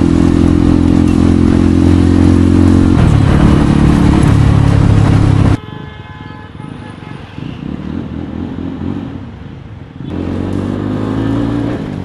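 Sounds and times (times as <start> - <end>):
motorcycle engine revving: 0.0 - 5.6, 10.0 - 12.0.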